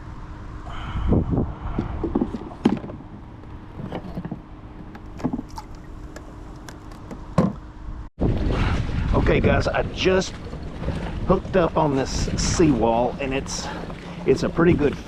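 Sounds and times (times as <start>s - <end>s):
faint steady hum: 0.0s - 8.1s
wind buffeting microphone: 0.7s - 4.2s, 8.2s - 15.0s.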